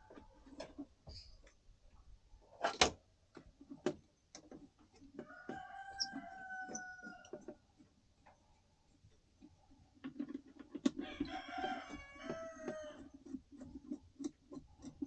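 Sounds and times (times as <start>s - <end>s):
rooster crowing: 5.2s - 7.4s, 11.0s - 13.0s.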